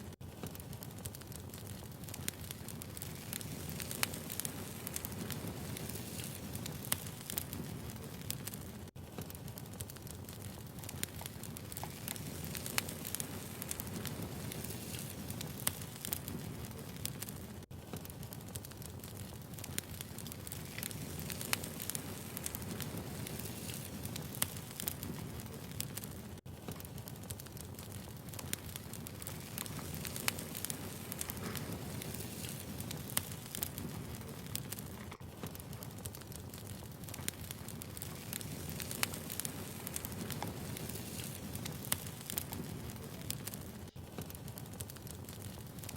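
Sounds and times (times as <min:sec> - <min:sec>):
wood fire crackling: 0:00.0 - 0:45.9.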